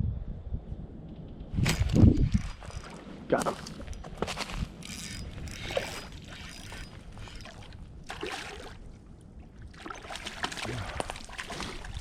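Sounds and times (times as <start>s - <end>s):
wind on microphone: 0.0s - 8.0s
fish splashing in water: 7.4s - 8.9s, 9.7s - 12.0s.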